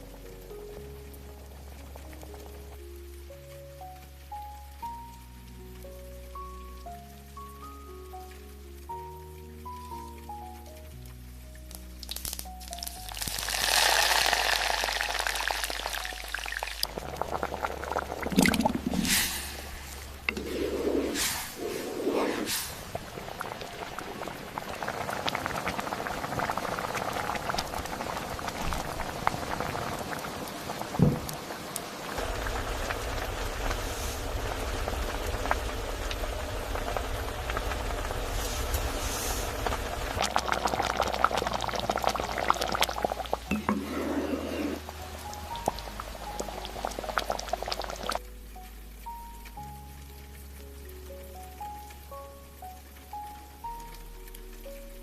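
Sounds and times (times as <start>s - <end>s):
raindrops ticking: 0.0s - 55.0s
soft background music: 0.0s - 55.0s
steady rain: 0.0s - 55.0s
liquid splashing: 12.0s - 48.2s
liquid pouring: 12.0s - 48.3s
low steady rumble: 32.2s - 43.9s.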